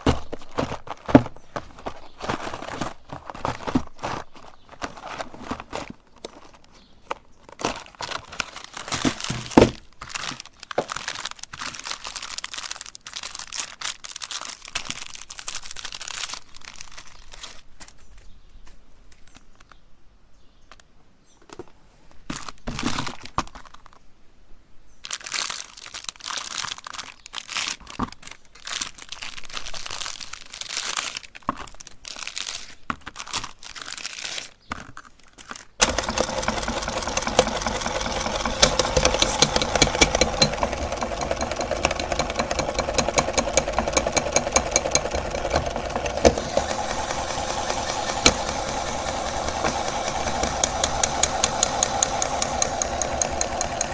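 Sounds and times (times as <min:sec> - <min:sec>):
packaging crinkling and rustling: 0:00.0 - 0:19.8, 0:21.5 - 0:24.1, 0:25.0 - 0:50.6
electric meat grinder running: 0:35.8 - 0:53.9.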